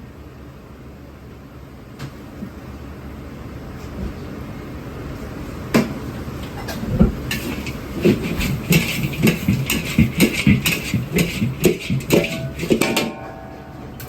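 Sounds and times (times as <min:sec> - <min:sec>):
kitchen equipment hum: 0:05.2 - 0:14.0
cookware metal knocks: 0:08.1 - 0:13.4.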